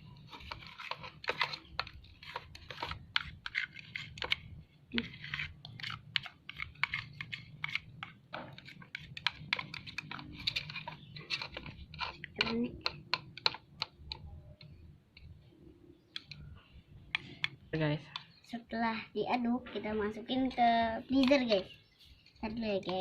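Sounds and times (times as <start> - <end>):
spoon scraping a bowl: 0.0 - 13.9.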